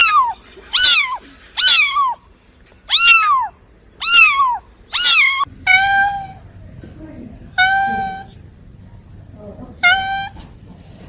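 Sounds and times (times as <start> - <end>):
cat meowing: 0.0 - 6.5, 7.5 - 8.4, 9.8 - 10.6.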